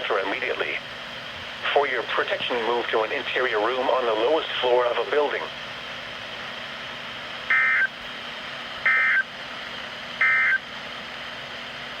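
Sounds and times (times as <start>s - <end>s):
radio hiss: 0.0s - 5.6s.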